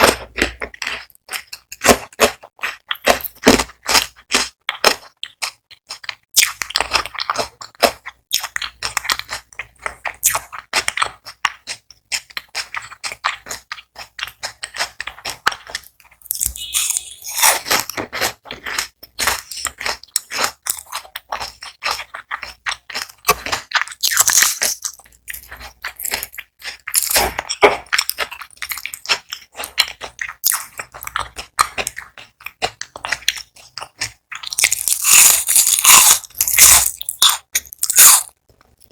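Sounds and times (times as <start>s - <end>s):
crunching and chewing onion rings: 0.0s - 38.9s.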